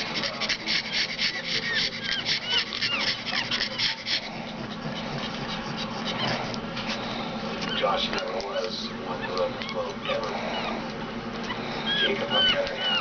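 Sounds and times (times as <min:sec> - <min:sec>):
puppies squeaking: 0:00.0 - 0:06.8, 0:07.5 - 0:13.0
fast rhythmic rubbing: 0:00.0 - 0:07.0.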